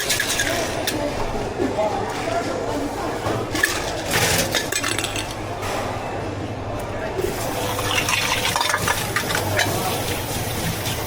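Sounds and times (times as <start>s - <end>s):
items clinking against a cup: 0.0s - 1.1s, 3.2s - 5.8s, 7.7s - 10.2s
liquid pouring: 7.2s - 11.0s.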